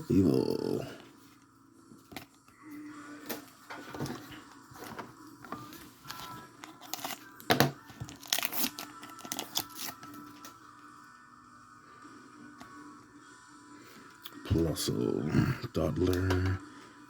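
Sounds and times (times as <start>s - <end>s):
cards being handled: 3.3s - 10.6s
foil wrapper tearing and crinkling: 6.1s - 7.4s, 8.0s - 10.3s.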